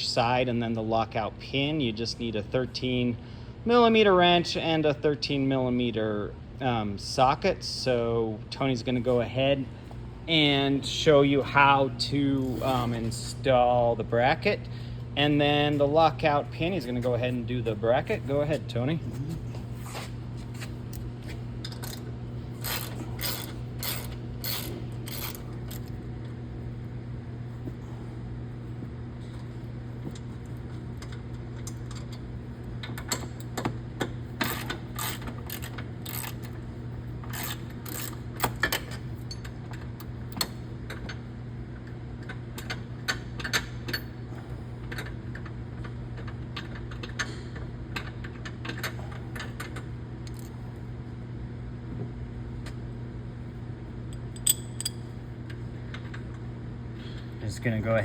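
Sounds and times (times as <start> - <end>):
steady low hum: 0.0 - 58.0
wrench clinking on bolt: 54.4 - 55.0.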